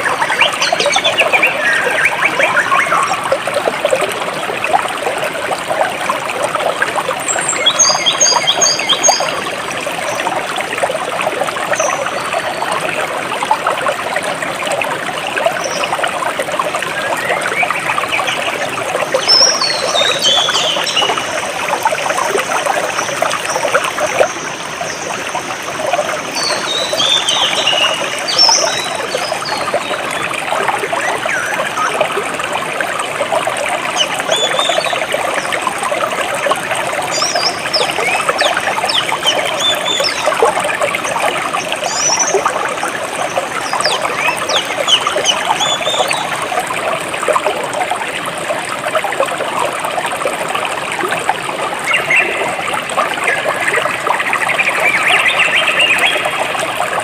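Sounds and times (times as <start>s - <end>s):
water trickling over rocks: 0.0s - 57.0s
birds chirping: 26.3s - 30.0s.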